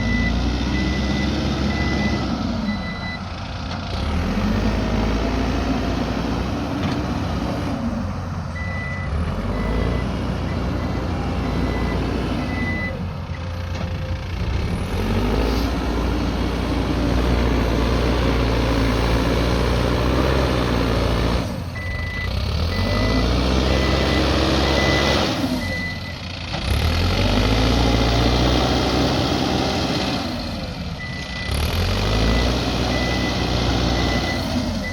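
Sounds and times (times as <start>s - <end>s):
reversing alarm beeping: 0.0s - 3.2s, 8.6s - 14.2s, 21.8s - 26.2s, 32.2s - 34.9s
diesel engine revving under load: 0.0s - 34.9s.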